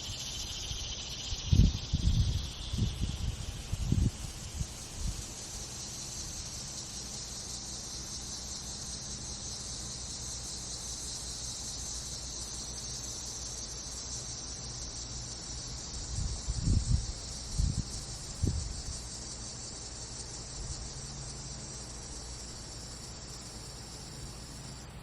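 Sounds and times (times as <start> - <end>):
bumblebee wings buzzing: 0.0 - 25.0
crickets chirping chorus: 0.0 - 25.0.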